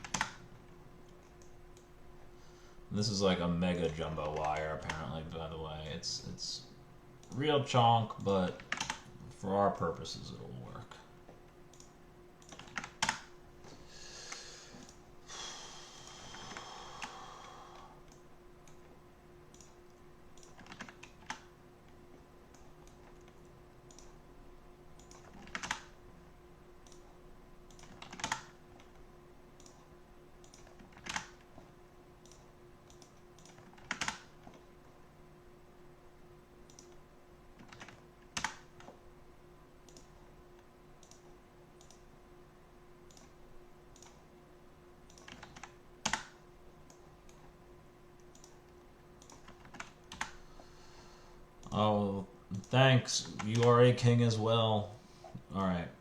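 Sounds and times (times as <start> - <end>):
computer keyboard keystrokes: 0.0 - 1.9, 3.8 - 5.1, 8.2 - 9.1, 11.7 - 13.3, 19.5 - 21.5, 22.5 - 24.2, 25.0 - 26.0, 26.8 - 27.1, 27.7 - 34.7, 36.6 - 37.0, 37.6 - 39.0, 39.8 - 40.2, 41.0 - 42.1, 43.0 - 44.2, 45.0 - 47.5, 48.2 - 50.4, 52.5 - 53.7
faint steady hum: 0.0 - 56.0.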